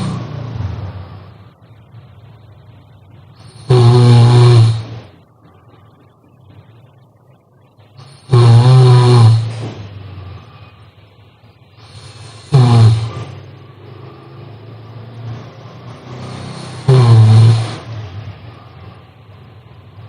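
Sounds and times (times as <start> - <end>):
person snoring: 0.0 - 0.4, 3.4 - 5.1, 8.0 - 9.8, 11.8 - 13.4, 16.1 - 18.0
quiet breathing: 11.7 - 13.5.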